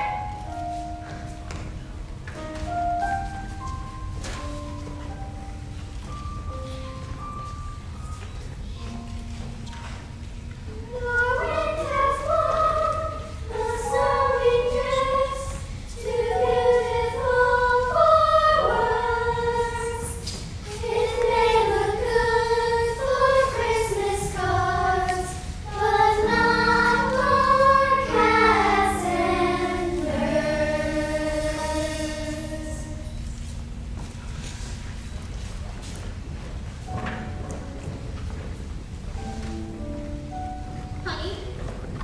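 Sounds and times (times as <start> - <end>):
low accompaniment notes: 0.0 - 42.0
choir singing slowly: 10.7 - 34.7.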